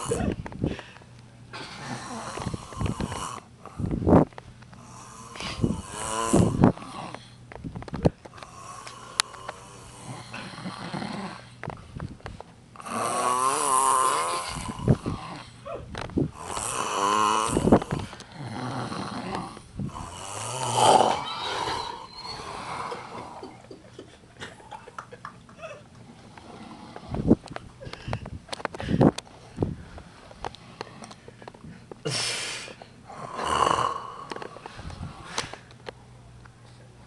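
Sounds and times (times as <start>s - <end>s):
man snoring heavily: 0.0s - 0.3s, 1.6s - 3.4s, 4.8s - 7.3s, 8.4s - 11.6s, 12.8s - 15.6s, 16.3s - 23.6s, 26.4s - 27.2s, 33.0s - 34.5s
short snorts and clicks: 8.3s - 11.7s, 16.4s - 21.8s.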